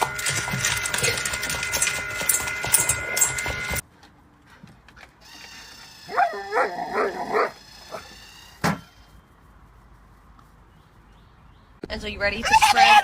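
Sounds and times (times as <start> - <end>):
dog barking: 6.1 - 7.6.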